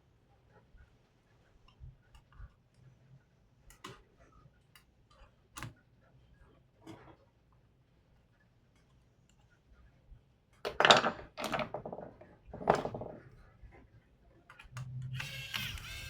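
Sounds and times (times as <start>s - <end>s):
small laptop parts clicking: 14.5s - 16.0s.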